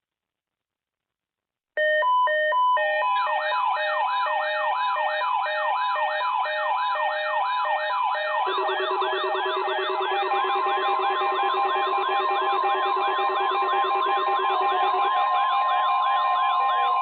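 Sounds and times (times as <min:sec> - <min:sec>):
wailing siren sweep: 0:02.8 - 0:17.0
steady pulsed beeps: 0:08.4 - 0:16.1
stepped electronic beeps: 0:08.5 - 0:17.0.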